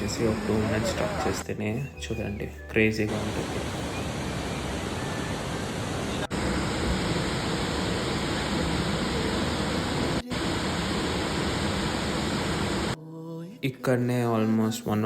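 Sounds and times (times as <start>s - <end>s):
waterfall roaring: 0.0s - 1.4s, 3.1s - 13.0s.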